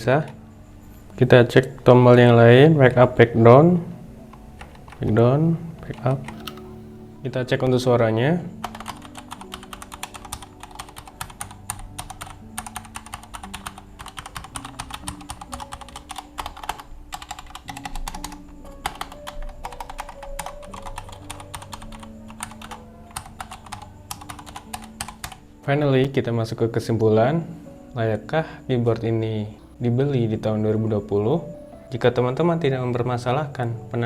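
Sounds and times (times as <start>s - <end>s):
soft background music: 0.0s - 34.0s
mechanical keyboard typing: 5.8s - 6.7s, 8.6s - 25.4s.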